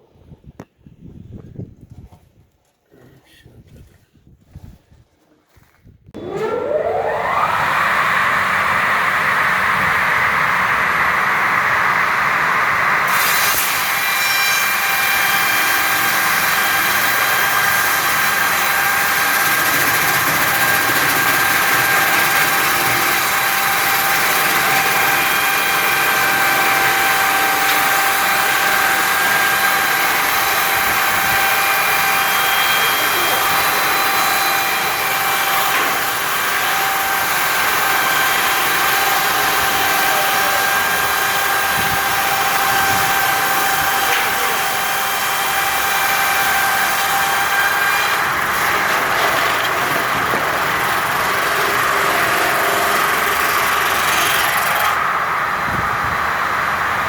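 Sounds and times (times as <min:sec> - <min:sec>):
sawmill machine high-pitched whine: 0:06.2 - 0:57.0.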